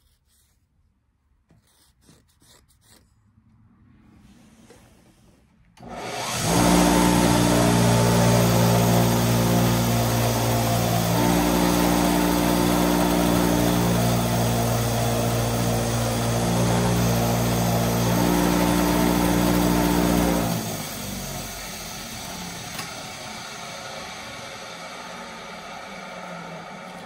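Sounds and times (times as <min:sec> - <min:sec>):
electric power tool motor running: 0:05.8 - 0:27.0.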